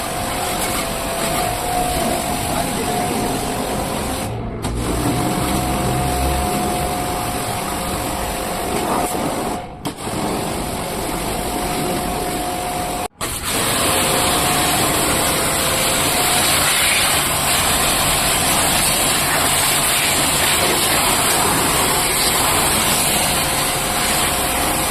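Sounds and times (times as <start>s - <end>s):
water spray hissing: 13.2s - 24.9s.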